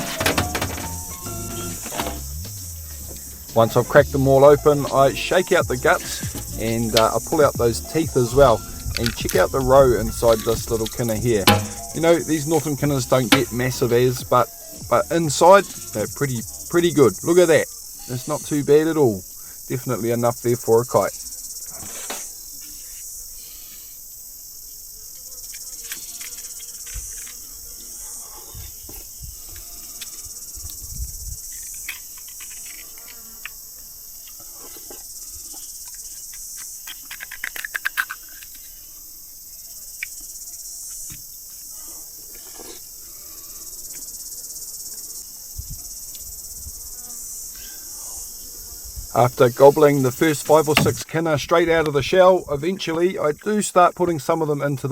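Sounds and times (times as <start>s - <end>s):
insects chirring: 0.0s - 54.9s
handling clicks and taps: 50.4s - 51.1s.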